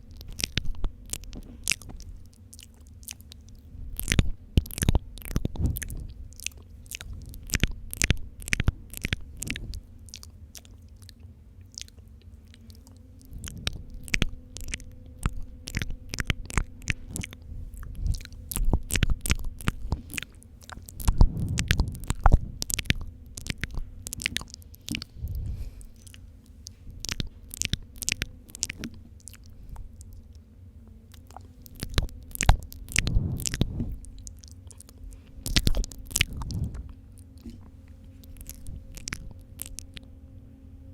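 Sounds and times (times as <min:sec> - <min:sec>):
wet mouth clicks and lip pops: 0:00.0 - 0:30.4, 0:31.1 - 0:40.0.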